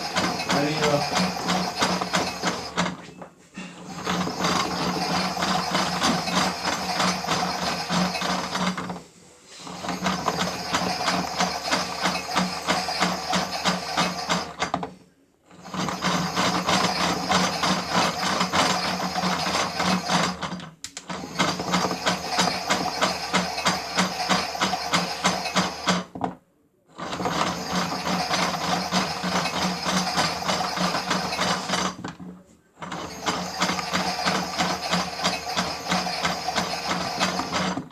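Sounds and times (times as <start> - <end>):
small electric motor whirring: 0.0 - 2.8.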